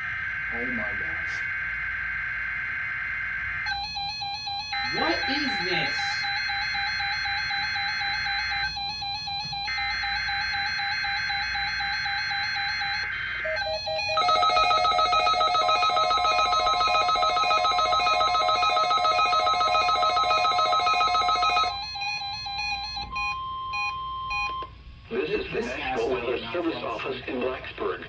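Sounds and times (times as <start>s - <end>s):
rapidly pulsing alert tone: 3.7s - 24.4s.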